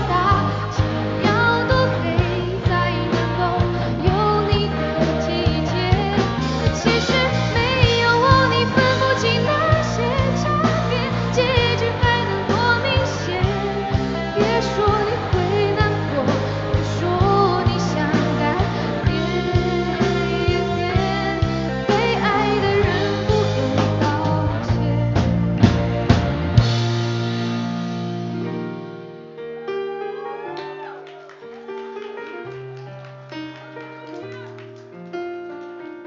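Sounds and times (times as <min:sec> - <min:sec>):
live pop band with singing: 0:00.0 - 0:27.1.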